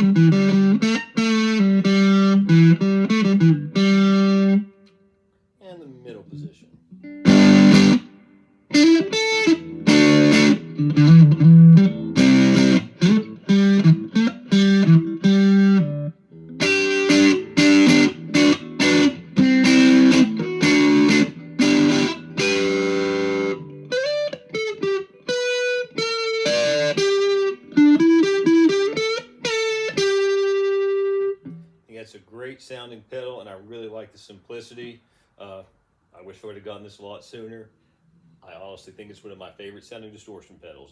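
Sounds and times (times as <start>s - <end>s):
distorted electric guitar: 0.0s - 4.9s, 6.9s - 31.7s.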